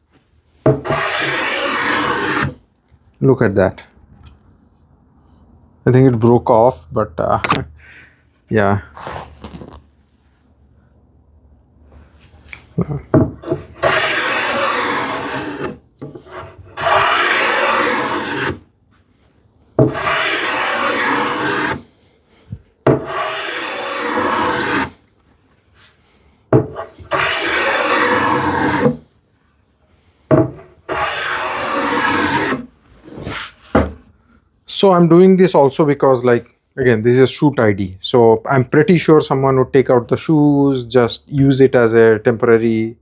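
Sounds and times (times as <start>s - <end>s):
hand plane cutting wood: 0.7s - 2.6s, 13.2s - 18.6s, 19.8s - 22.0s, 22.9s - 25.0s, 26.6s - 29.0s, 30.6s - 33.8s.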